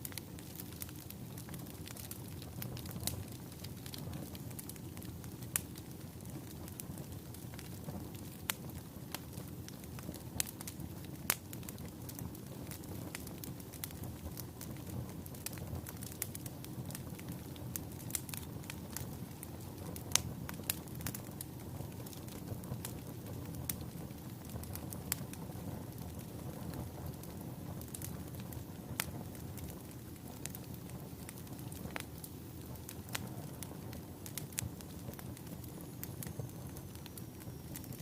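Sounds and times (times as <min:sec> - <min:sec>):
fire flames rushing: 0:00.0 - 0:38.0
wood fire crackling and popping: 0:00.0 - 0:38.0.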